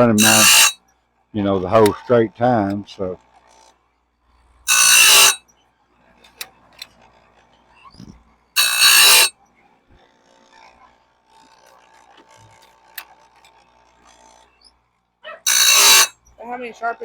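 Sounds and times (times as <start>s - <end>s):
grinding wheel grinding metal: 0.0s - 0.8s, 1.4s - 3.7s, 4.7s - 5.4s, 6.1s - 9.3s, 9.9s - 14.8s, 15.4s - 16.6s.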